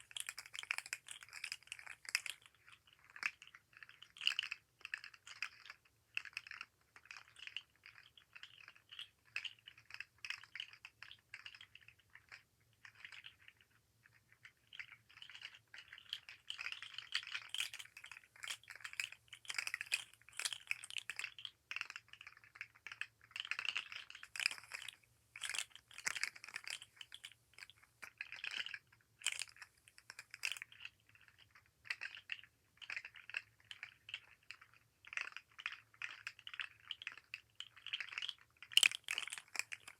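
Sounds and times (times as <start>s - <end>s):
toy segments clicking and rattling: 0.0s - 13.7s, 14.4s - 39.9s.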